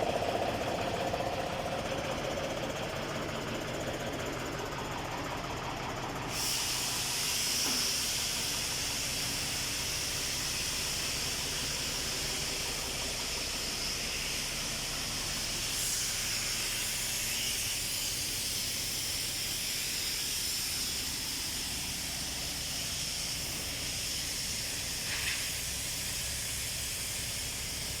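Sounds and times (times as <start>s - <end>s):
diesel truck engine running: 0.0s - 28.0s
steady loud hiss: 6.3s - 28.0s.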